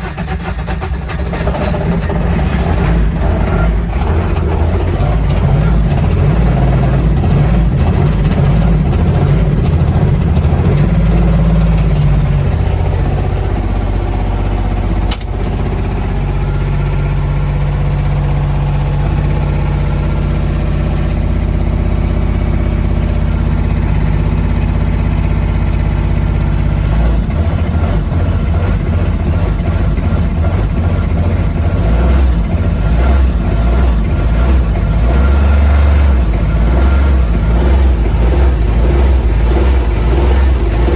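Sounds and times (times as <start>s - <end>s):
diesel engine running cold: 0.0s - 40.9s
sharp click: 15.1s - 15.6s.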